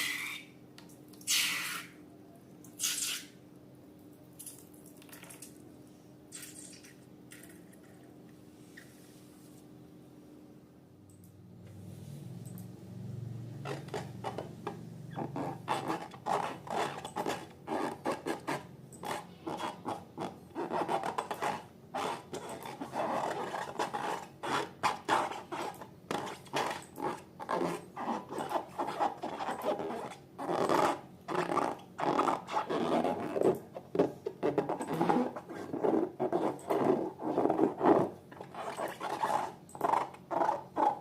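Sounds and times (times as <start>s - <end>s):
sticky slime rubbing and scraping: 13.7s - 41.0s.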